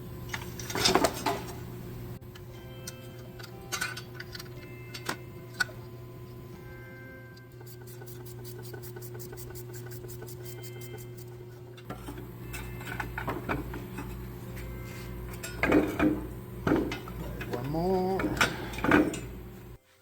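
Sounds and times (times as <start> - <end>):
steady low hum: 0.0 - 19.8
tools and metal parts clinking: 2.3 - 5.9, 11.8 - 19.4.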